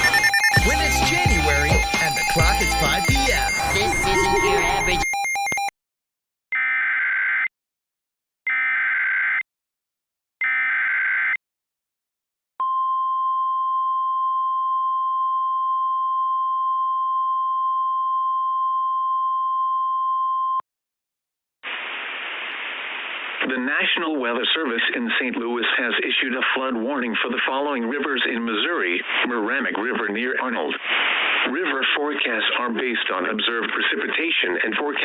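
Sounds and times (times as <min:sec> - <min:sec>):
digital data tone bursts: 0:00.0 - 0:05.7
steady high warning tone: 0:00.0 - 0:05.7.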